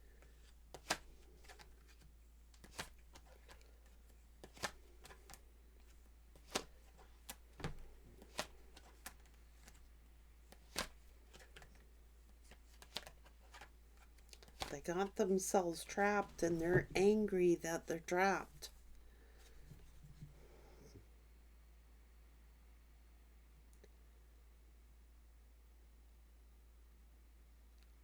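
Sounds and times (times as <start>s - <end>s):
cards snapping and tapping: 0.2s - 9.8s, 10.5s - 14.8s
low steady hum: 14.7s - 28.0s.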